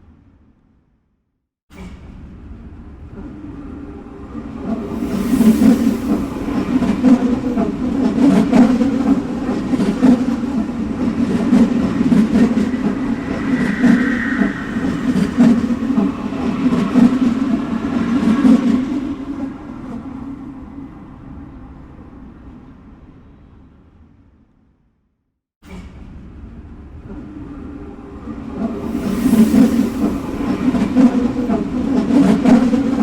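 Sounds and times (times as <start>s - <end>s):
subway train rumbling: 1.8s - 24.3s, 25.7s - 33.0s
high train squeal: 3.2s - 21.1s, 27.1s - 33.0s.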